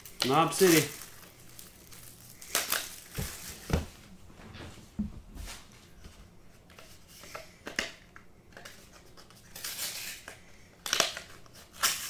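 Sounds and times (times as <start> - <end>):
rustling scrape: 3.1 - 6.3.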